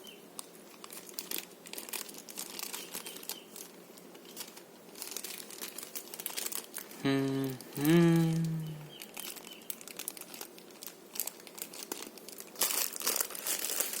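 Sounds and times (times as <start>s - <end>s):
plastic packaging crinkling: 0.4s - 7.0s, 8.9s - 14.0s
man humming: 7.0s - 9.0s.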